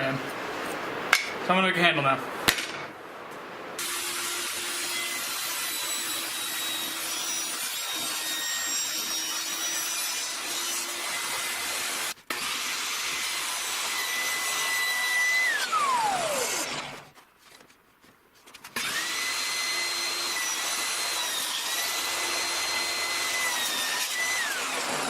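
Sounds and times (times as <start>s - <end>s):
power tool grinding: 3.8s - 17.1s, 18.8s - 25.0s
power tool whine: 3.8s - 17.1s, 18.8s - 25.0s.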